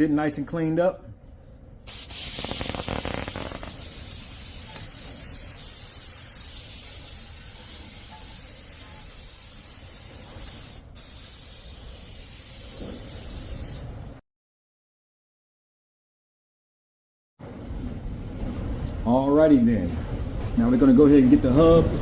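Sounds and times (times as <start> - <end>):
aerosol spray hissing: 1.9 - 13.9.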